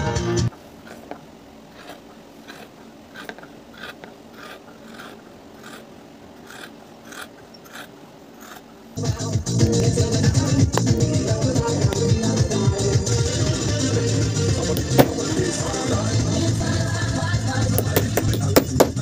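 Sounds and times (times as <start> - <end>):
music: 0.0 - 0.5, 9.0 - 19.0
short rasping strokes: 0.5 - 8.8.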